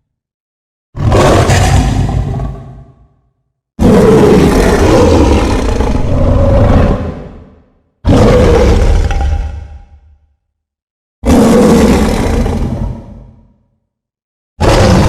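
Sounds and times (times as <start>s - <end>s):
monster roar: 1.0s - 3.1s, 3.8s - 10.0s, 11.2s - 13.4s, 14.6s - 15.0s.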